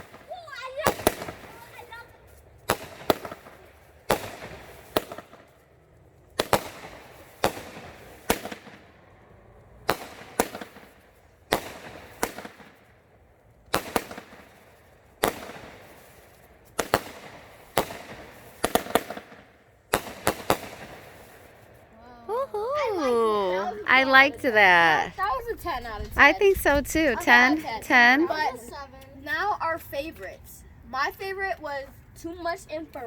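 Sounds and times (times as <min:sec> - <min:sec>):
fireworks bangs: 0:00.0 - 0:01.9, 0:15.2 - 0:21.4, 0:26.2 - 0:28.2.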